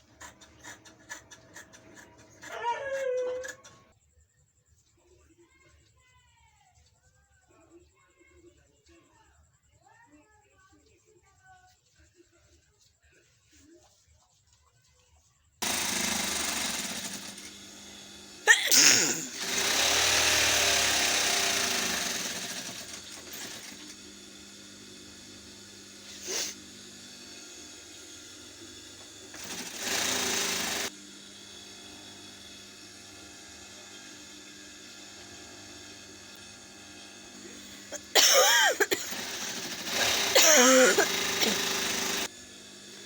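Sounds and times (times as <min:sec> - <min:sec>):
person sneezing: 0:18.5 - 0:19.4, 0:40.4 - 0:41.1.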